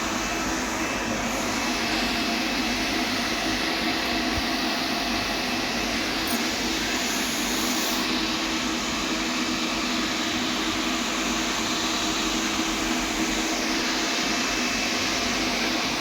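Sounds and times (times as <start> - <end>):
welding hiss and hum: 0.0 - 8.9.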